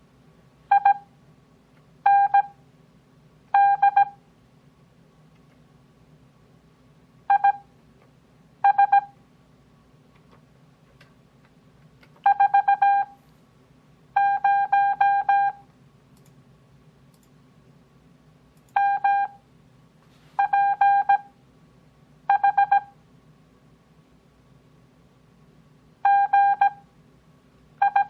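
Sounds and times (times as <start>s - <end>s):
morse code beeps: 0.7s - 1.1s, 2.1s - 2.5s, 3.6s - 4.2s, 7.3s - 7.6s, 8.6s - 9.1s, 12.2s - 13.1s, 14.2s - 15.6s, 18.8s - 19.4s, 20.4s - 21.3s, 22.3s - 22.9s, 26.1s - 26.8s, 27.8s - 28.0s.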